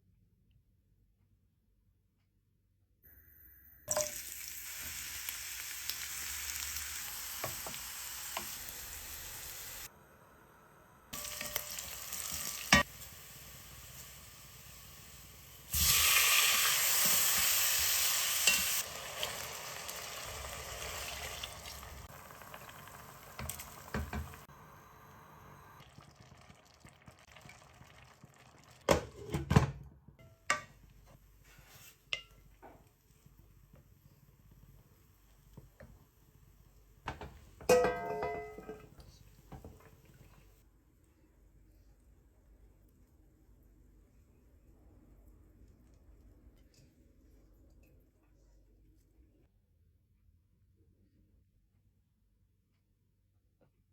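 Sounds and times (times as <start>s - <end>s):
food sizzling in hot oil: 3.9s - 9.9s, 11.0s - 24.6s, 25.2s - 29.2s
spoon knocking against pot: 37.1s - 38.9s.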